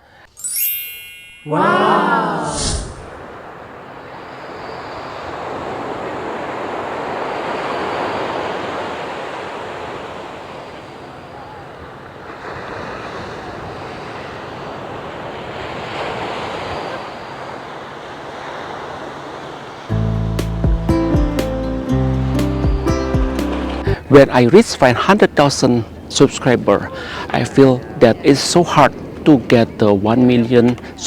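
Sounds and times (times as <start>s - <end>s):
ocean surf washing in: 1.5s - 25.4s.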